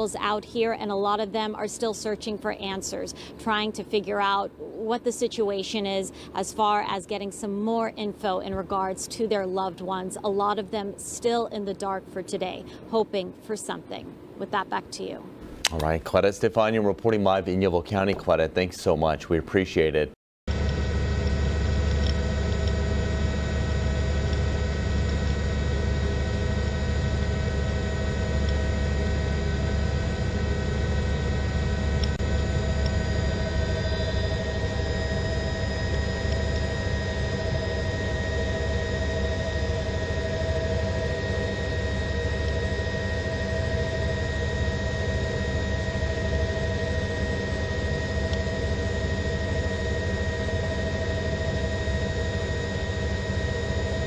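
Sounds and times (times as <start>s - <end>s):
aircraft engine drone: 0.0s - 14.6s, 20.5s - 54.0s.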